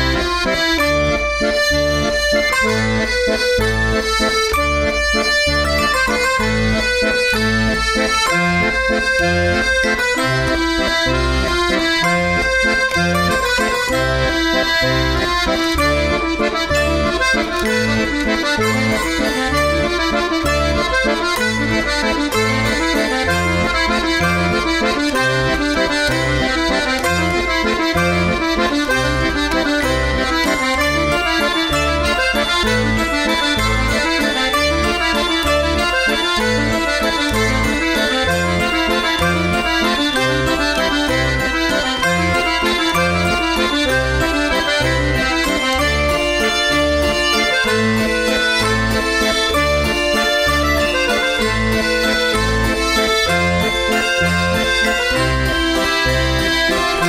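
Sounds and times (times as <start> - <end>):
accordion music over a beat: 0.0 - 57.0.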